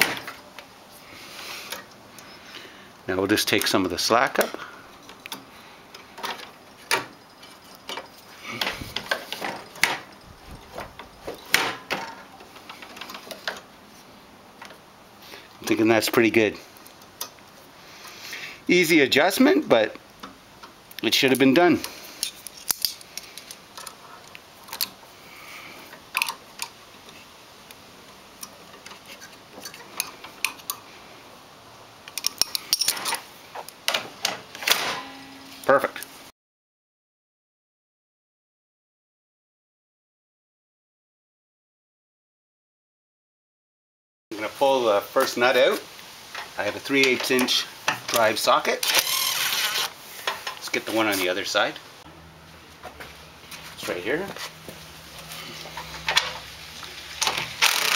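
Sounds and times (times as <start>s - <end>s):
hand tools clinking on metal: 3.5s - 13.6s, 21.2s - 24.0s, 32.1s - 33.3s.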